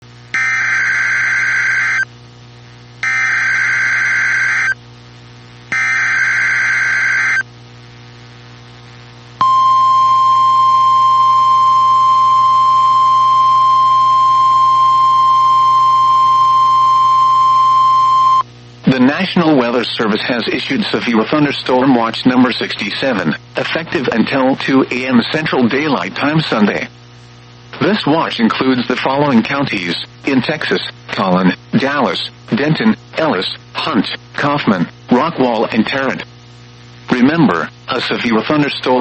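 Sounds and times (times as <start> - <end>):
steady warning alarm tone: 0.4 - 2.1, 3.0 - 4.8, 5.7 - 7.4, 9.4 - 18.4.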